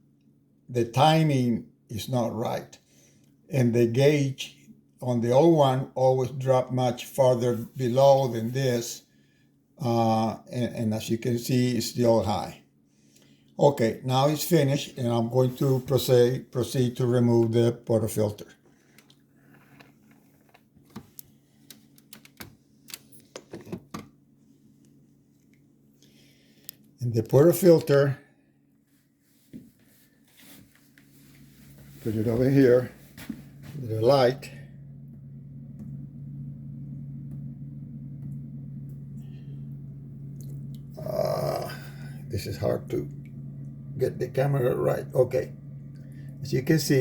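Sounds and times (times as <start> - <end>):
faint low hum: 0.0 - 47.0.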